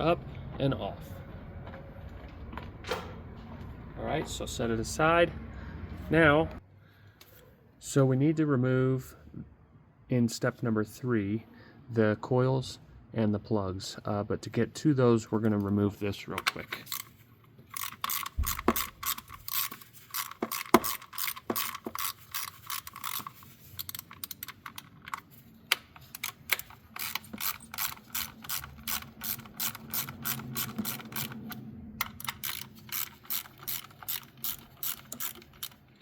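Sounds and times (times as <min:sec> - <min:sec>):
hand ratchet clicking: 0:16.4 - 0:17.1, 0:17.7 - 0:36.0.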